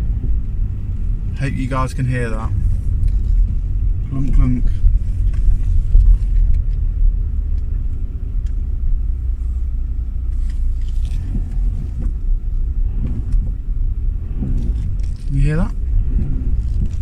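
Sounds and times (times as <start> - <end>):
car running rumble: 0.0 - 17.0.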